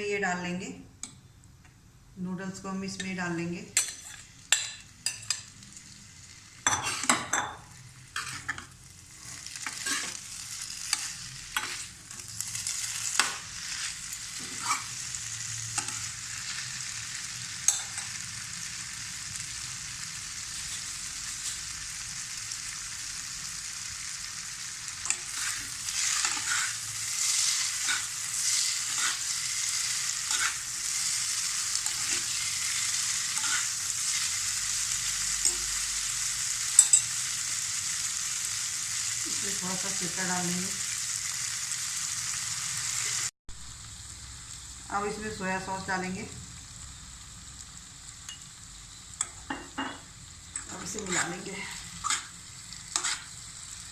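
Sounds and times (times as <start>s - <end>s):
food sizzling in oil: 2.2s - 53.9s
spatula scraping a pan: 6.6s - 7.5s, 8.1s - 15.0s, 25.0s - 34.4s, 50.6s - 53.5s.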